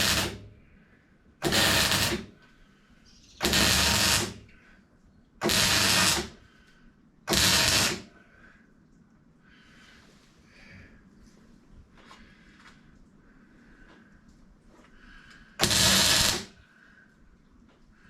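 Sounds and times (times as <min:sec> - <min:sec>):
arc welder crackling: 0:00.0 - 0:00.6, 0:01.4 - 0:02.4, 0:03.4 - 0:04.5, 0:05.4 - 0:06.4, 0:07.3 - 0:08.2, 0:15.6 - 0:16.6.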